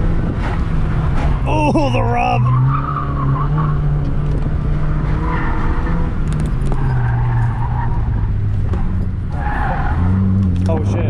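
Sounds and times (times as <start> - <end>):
tires squealing: 1.2 - 11.0.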